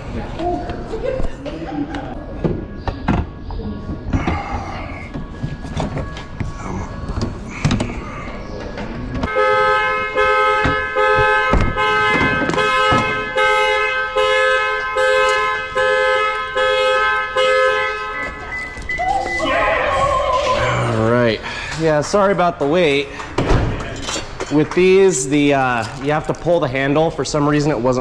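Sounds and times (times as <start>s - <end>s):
car alarm horn honking: 9.3s - 19.7s.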